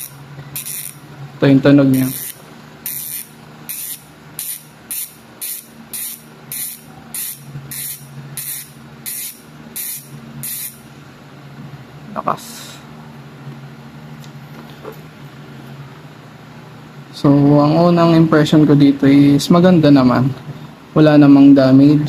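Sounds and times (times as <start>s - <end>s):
freehub ratchet buzzing: 0.0s - 1.1s, 1.8s - 10.9s.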